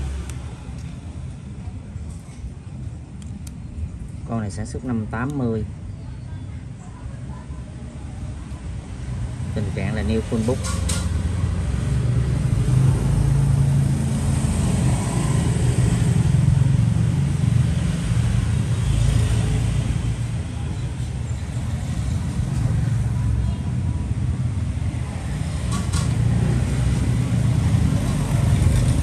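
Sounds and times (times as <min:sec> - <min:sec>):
road traffic rumble: 0:00.0 - 0:29.0.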